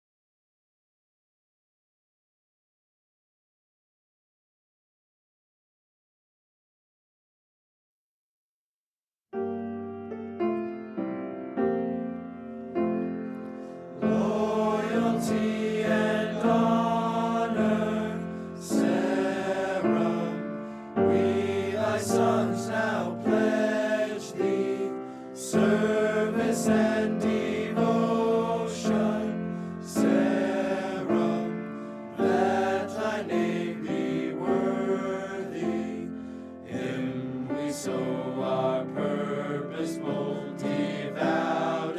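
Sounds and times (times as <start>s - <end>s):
piano playing: 9.4s - 41.9s
choir singing a hymn: 13.5s - 41.9s.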